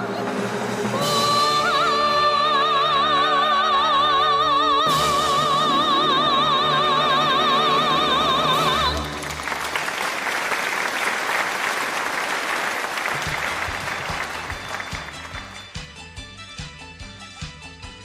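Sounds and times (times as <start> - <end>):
sustained accompaniment: 0.0 - 9.7
audience applause: 8.5 - 15.8.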